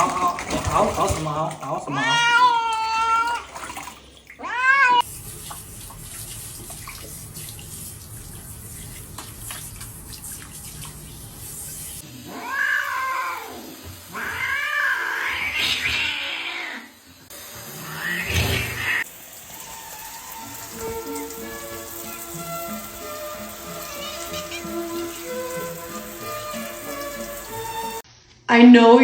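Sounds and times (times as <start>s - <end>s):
shower water running: 0.0s - 28.1s
cat meowing: 1.9s - 3.5s, 4.4s - 5.0s, 12.2s - 16.9s, 23.8s - 25.1s.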